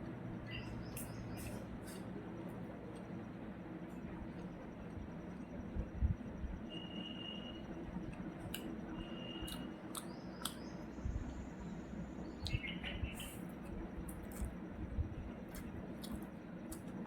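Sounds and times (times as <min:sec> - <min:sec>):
low room hum: 0:00.0 - 0:17.0
eating clicks and crunches: 0:08.0 - 0:08.8, 0:09.4 - 0:10.8, 0:12.4 - 0:17.0.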